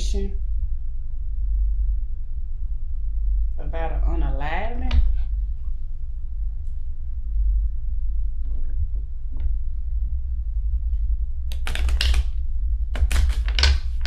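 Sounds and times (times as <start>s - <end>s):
low hum: 0.0s - 14.0s
cards being shuffled: 11.5s - 14.0s.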